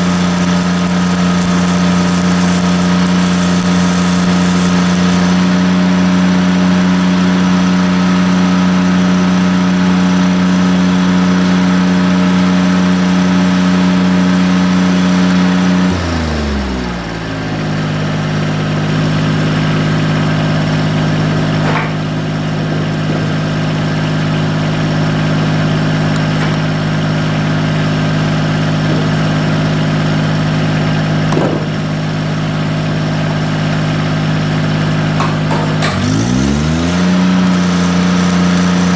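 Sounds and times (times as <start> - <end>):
welder engine running: 0.0 - 38.9.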